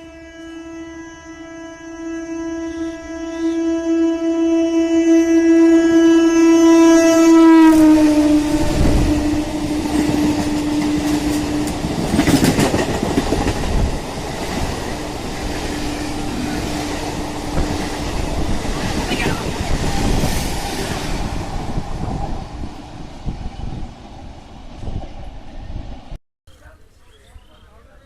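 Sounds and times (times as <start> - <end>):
train horn honking: 0.0 - 12.3
train wheels clacking on rails: 9.6 - 21.2.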